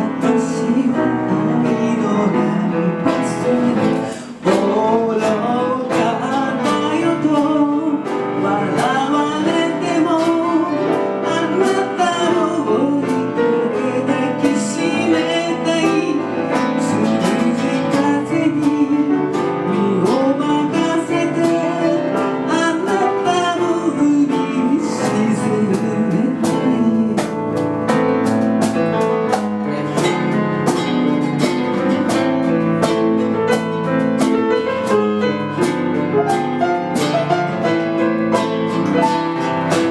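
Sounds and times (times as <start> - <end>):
person singing a slow ballad: 0.0 - 27.9
guitar and piano backing track: 0.0 - 39.9.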